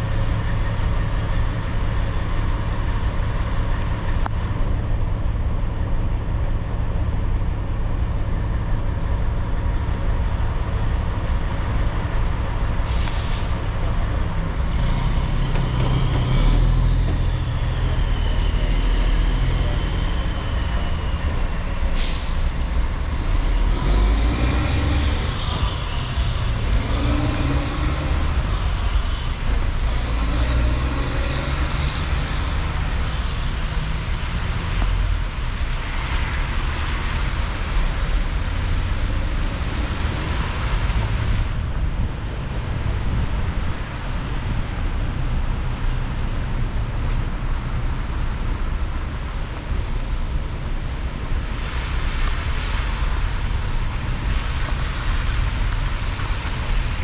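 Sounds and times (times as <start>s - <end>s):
engine and road rumble: 0.0s - 57.0s
wavering high-pitched squeal: 24.0s - 34.1s.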